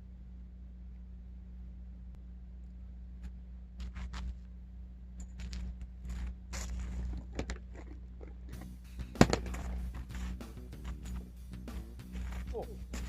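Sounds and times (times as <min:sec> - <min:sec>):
low steady hum: 0:00.0 - 0:13.0
crunching and scuffing handling noises: 0:05.8 - 0:13.0
sharp knock: 0:09.0 - 0:11.0.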